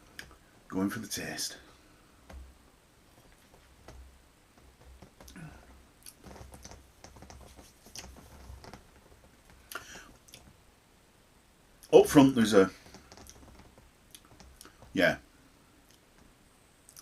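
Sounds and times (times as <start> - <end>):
mouth smacks and clicks: 9.6 - 10.5, 14.1 - 14.8.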